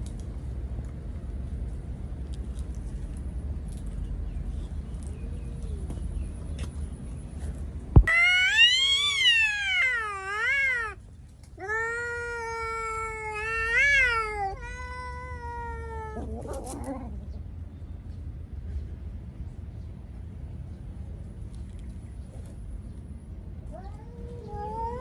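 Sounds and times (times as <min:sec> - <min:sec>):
cat yowling meows: 0:08.1 - 0:11.0, 0:11.6 - 0:17.1, 0:23.7 - 0:25.0.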